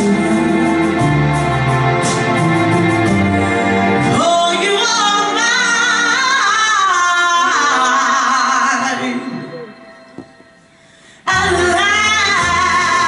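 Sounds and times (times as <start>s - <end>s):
band playing chords: 0.0s - 6.6s
woman singing: 4.1s - 9.6s, 11.2s - 13.0s.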